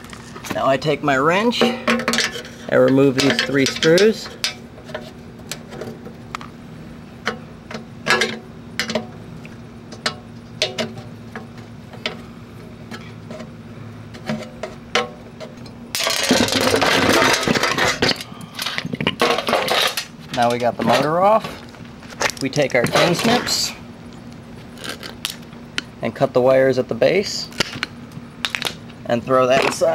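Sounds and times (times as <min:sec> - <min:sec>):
loud rattling and scraping: 0:01.4 - 0:06.3, 0:14.1 - 0:23.8.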